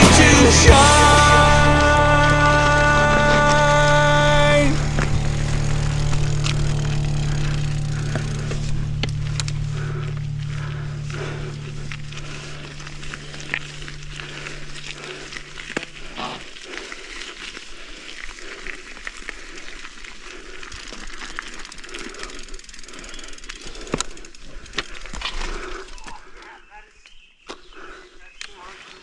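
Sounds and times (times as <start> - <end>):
bike tyres on dirt trail: 0.0 - 29.0
bike rattling and clicking: 0.2 - 26.5
low steady hum: 0.8 - 16.8.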